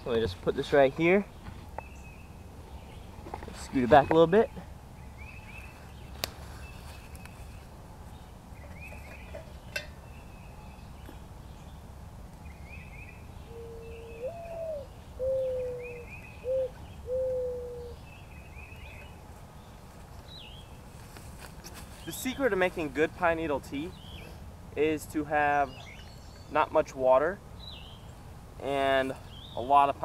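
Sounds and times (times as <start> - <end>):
dove cooing: 13.6 - 18.0.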